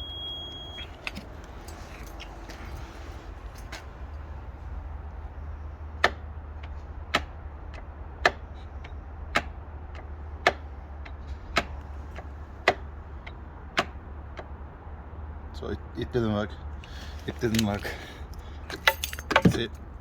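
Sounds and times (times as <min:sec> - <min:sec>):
steady low hum: 0:00.0 - 0:15.6.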